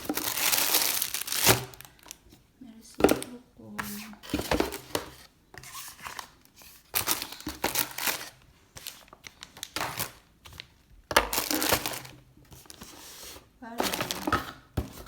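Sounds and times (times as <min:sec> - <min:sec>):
gift packaging crinkling: 0:00.0 - 0:02.2, 0:06.0 - 0:13.2, 0:13.8 - 0:14.4.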